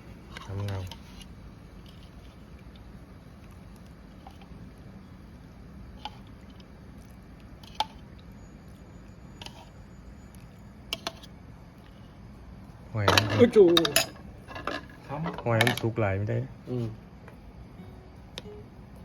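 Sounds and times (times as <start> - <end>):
low steady hum: 0.0 - 19.0
kitchen utensils clicking: 13.0 - 15.9.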